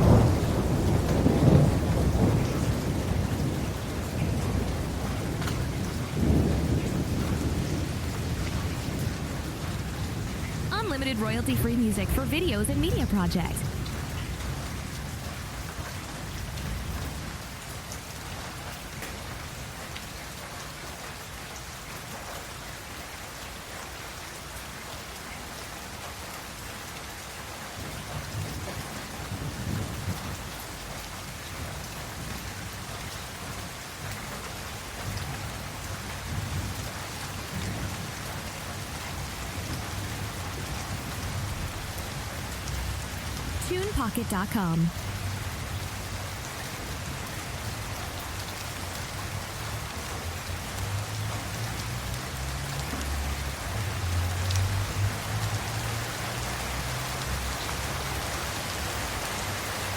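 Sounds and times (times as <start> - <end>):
thunder rumbling: 0.0 - 10.7
steady rain: 0.0 - 59.9.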